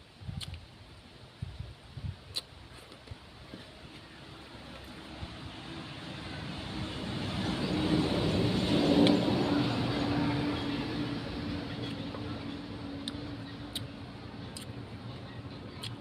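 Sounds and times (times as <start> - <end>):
vehicle engine passing by: 4.2 - 15.5.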